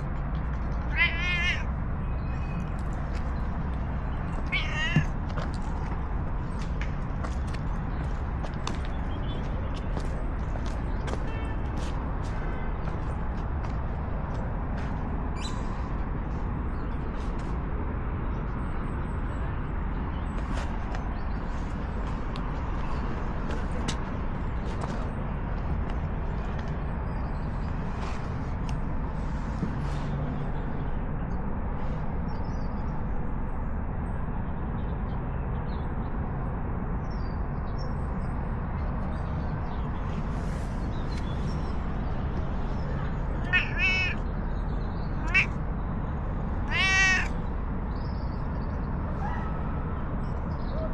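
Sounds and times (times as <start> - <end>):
distant traffic rumble: 0.0 - 50.9.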